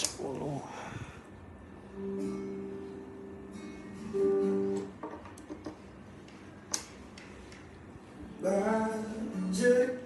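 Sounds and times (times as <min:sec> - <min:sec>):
acoustic guitar notes: 0:01.9 - 0:05.0.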